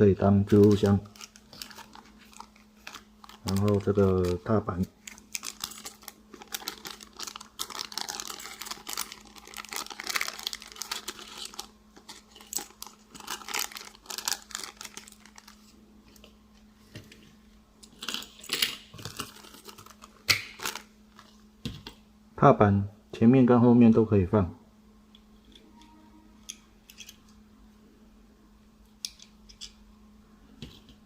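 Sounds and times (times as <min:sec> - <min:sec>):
faint steady hum: 0:00.0 - 0:31.0
plastic packaging crinkling: 0:00.4 - 0:16.4, 0:17.9 - 0:21.4.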